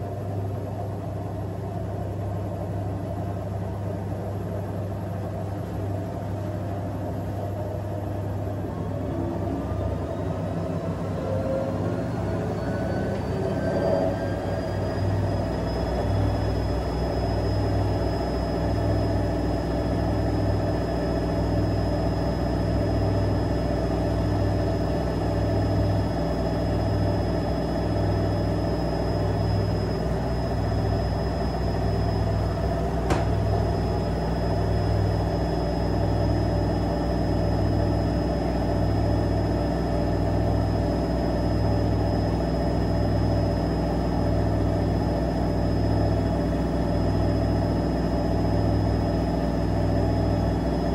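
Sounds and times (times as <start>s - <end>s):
washing machine spinning: 0.0s - 50.9s
sharp click: 33.1s - 33.4s.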